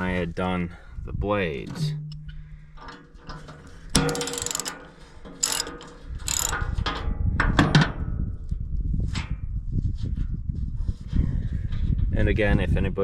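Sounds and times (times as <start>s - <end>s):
ratchet wrench clicking: 4.0s - 4.8s, 5.4s - 6.8s.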